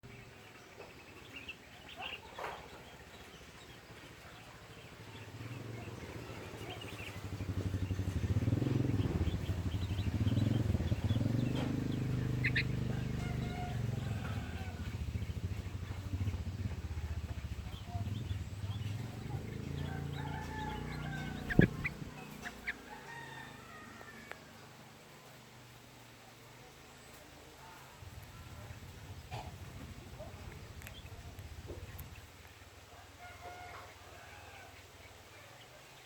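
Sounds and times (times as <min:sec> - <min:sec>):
bird chicks chirping: 0:00.0 - 0:24.1, 0:28.2 - 0:32.6
low engine hum: 0:00.0 - 0:25.9, 0:28.0 - 0:32.8.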